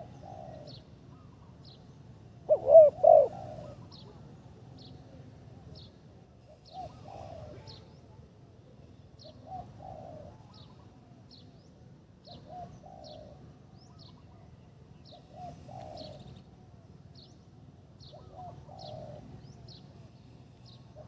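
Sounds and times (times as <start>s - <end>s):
dove cooing: 0.0s - 0.8s, 2.5s - 3.9s, 6.7s - 7.8s, 9.5s - 10.5s, 12.4s - 13.4s, 15.2s - 16.3s, 18.1s - 19.3s.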